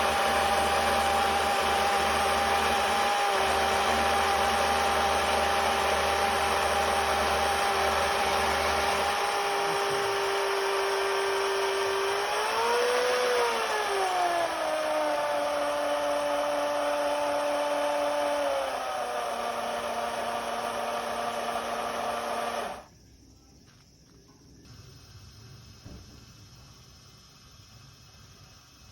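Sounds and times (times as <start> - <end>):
electric motor whining: 0.0 - 22.9.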